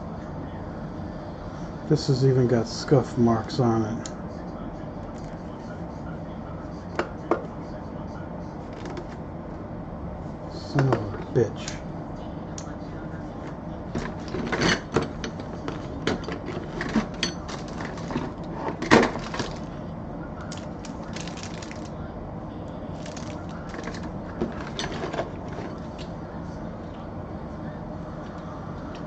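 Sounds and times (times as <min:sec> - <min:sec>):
parts clicking and knocking: 0:14.0 - 0:19.7, 0:23.0 - 0:26.1
packaging rustling: 0:15.6 - 0:19.7, 0:20.5 - 0:21.9, 0:23.0 - 0:25.8.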